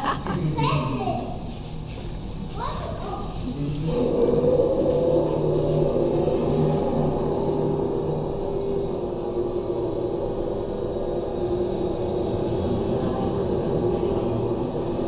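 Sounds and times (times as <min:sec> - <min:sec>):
mechanical lift humming: 0:03.5 - 0:15.0.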